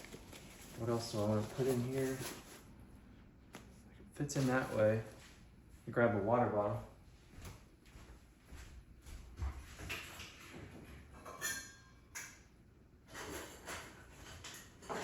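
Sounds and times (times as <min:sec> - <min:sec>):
backpack fabric rustling: 0:00.0 - 0:02.7.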